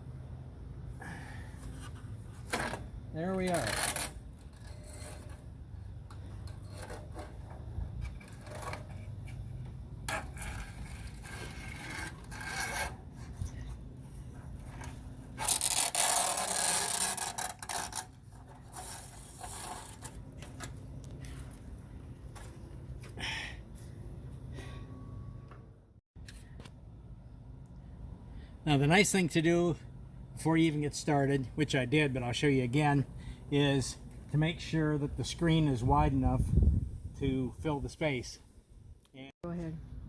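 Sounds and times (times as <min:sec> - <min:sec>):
screen mesh rubbing and scraping: 0:01.7 - 0:21.4.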